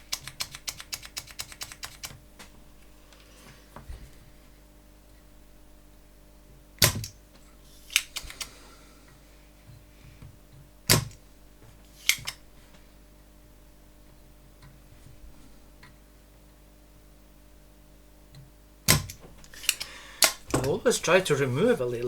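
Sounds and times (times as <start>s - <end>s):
small tools clicking on workbench: 0.0s - 2.5s, 12.0s - 12.4s, 18.9s - 20.8s.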